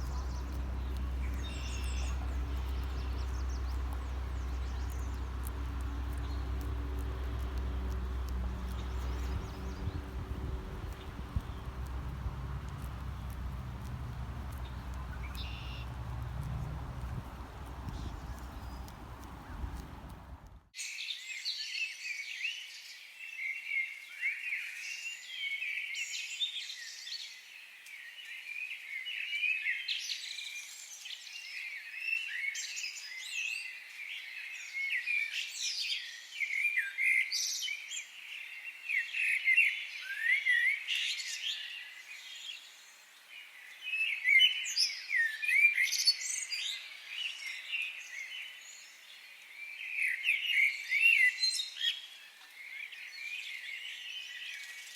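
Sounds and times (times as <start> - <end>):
birds chirping and twittering: 0.0 - 21.4.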